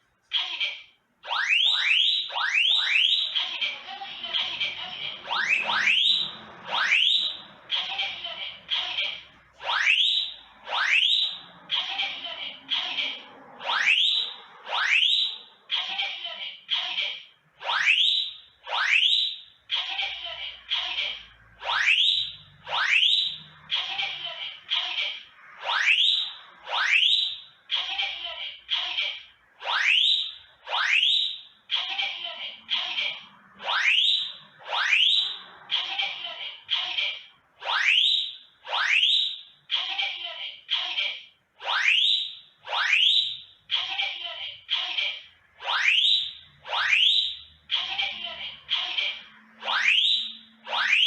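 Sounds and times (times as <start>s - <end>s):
smoke alarm whooping sweep tones: 1.3s - 3.5s, 4.4s - 7.9s, 9.6s - 11.6s, 13.6s - 15.5s, 17.6s - 19.6s, 21.6s - 23.5s, 25.6s - 27.6s, 29.6s - 31.5s, 33.6s - 35.5s, 37.6s - 39.6s, 41.7s - 43.6s, 45.6s - 47.6s, 49.6s - 51.0s.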